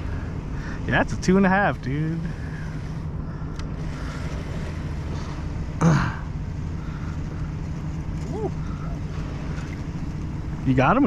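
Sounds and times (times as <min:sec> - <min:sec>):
distant traffic hum: 0:00.0 - 0:11.0
person clearing throat: 0:05.8 - 0:06.2.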